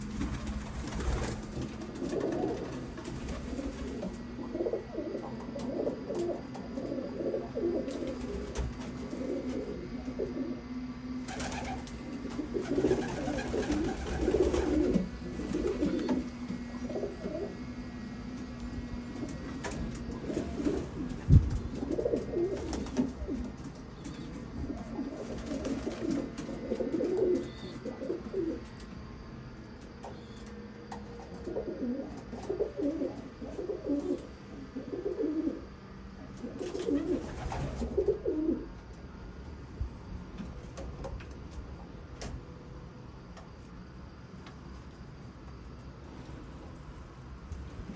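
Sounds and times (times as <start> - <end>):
pigeons cooing: 0.0 - 28.8, 30.0 - 38.8
steady low hum: 0.0 - 47.9.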